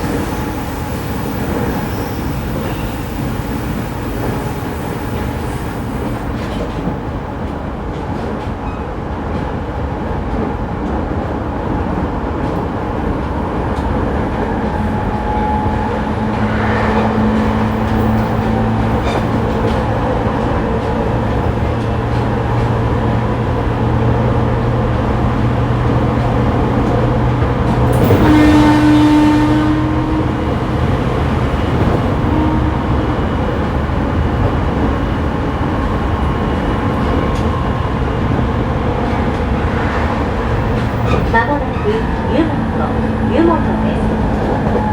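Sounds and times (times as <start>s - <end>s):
train wheels rumbling on rails: 0.0s - 44.9s.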